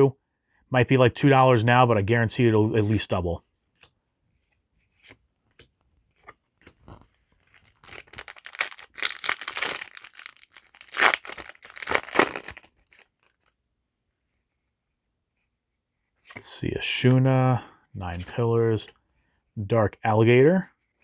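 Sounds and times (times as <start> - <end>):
foil wrapper tearing and crinkling: 7.6 - 13.1.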